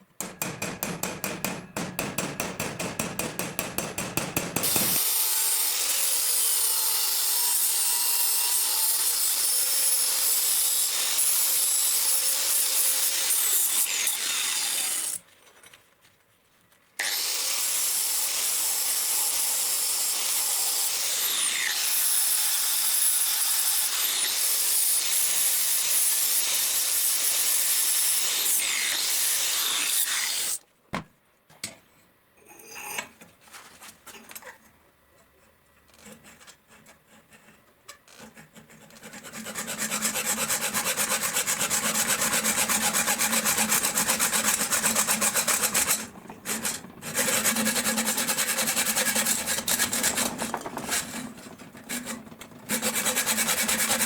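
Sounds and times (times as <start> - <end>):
power grinder grinding steel: 4.6 - 15.2, 17.0 - 30.6, 39.4 - 54.0.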